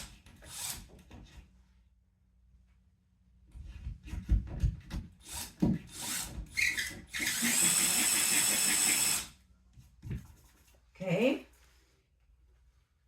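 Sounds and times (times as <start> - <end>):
power drill driving a screw: 0.0 - 0.9, 5.2 - 9.3.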